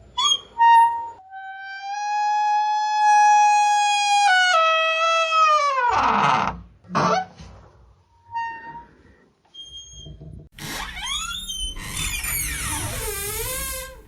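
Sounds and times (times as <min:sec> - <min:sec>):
door hinge creaking: 0:09.7 - 0:14.0.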